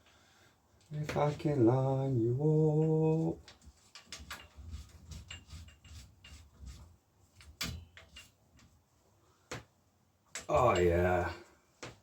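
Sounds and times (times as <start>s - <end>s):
clicks and taps of metal parts: 10.3s - 11.0s.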